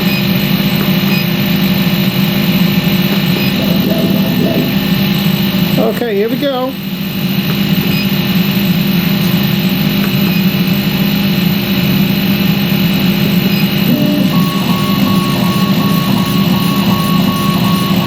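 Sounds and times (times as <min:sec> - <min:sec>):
extraction fan humming: 0:00.0 - 0:18.0
faint pulsing high tone: 0:03.3 - 0:05.2, 0:13.7 - 0:18.0.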